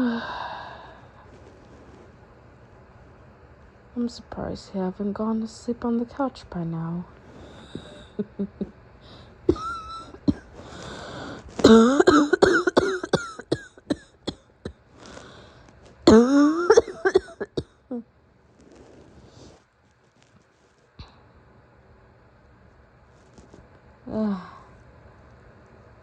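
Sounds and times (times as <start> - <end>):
woman coughing: 9.4 - 10.5, 11.6 - 14.4, 16.1 - 18.0.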